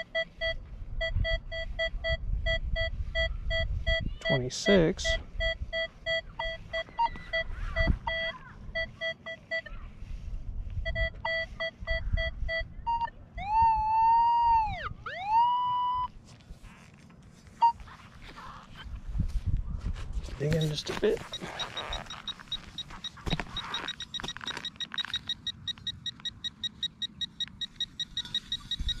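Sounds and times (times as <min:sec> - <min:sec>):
metal detector short beeps: 0:00.0 - 0:09.7, 0:10.8 - 0:13.1, 0:20.5 - 0:29.0
metal detector dipping tone: 0:10.9 - 0:12.3, 0:20.6 - 0:29.0.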